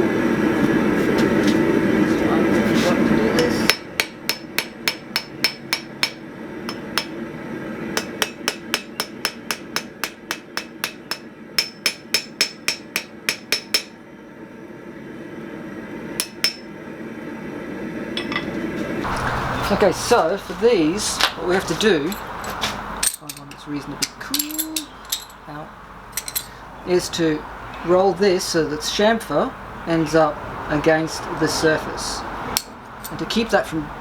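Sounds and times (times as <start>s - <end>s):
hammer striking steel on anvil: 3.4s - 7.2s, 8.0s - 14.0s, 16.2s - 16.7s, 18.2s - 18.5s.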